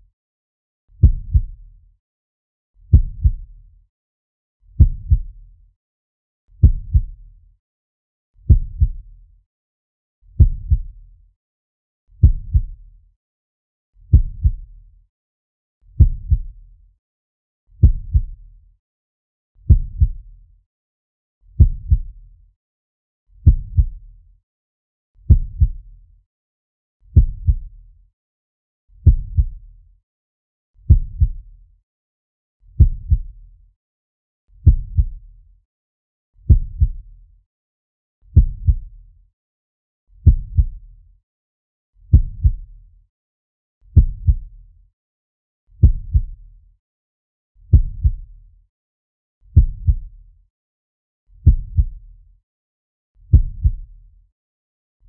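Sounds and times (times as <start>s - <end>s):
heartbeat thumps: 1.0s - 1.6s, 2.9s - 3.4s, 4.8s - 5.3s, 6.6s - 7.2s, 8.5s - 9.0s, 10.4s - 10.9s, 12.2s - 12.8s, 14.1s - 14.6s, 16.0s - 16.5s, 17.8s - 18.4s, 19.7s - 20.2s, 21.6s - 22.1s, 23.4s - 24.0s, 25.3s - 25.8s, 27.2s - 27.6s, 29.0s - 29.6s, 30.9s - 31.4s, 32.8s - 33.3s, 34.6s - 35.2s, 36.5s - 37.0s, 38.4s - 38.9s, 40.2s - 40.8s, 42.1s - 42.6s, 44.0s - 44.4s, 45.8s - 46.4s, 47.7s - 48.2s, 49.6s - 50.1s, 51.4s - 51.9s, 53.3s - 53.8s.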